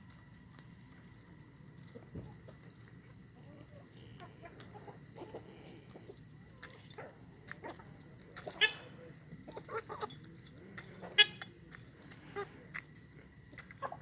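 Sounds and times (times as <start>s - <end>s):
chicken clucks: 0.1s - 14.0s
chicken squawks: 7.0s - 10.1s, 11.0s - 11.5s.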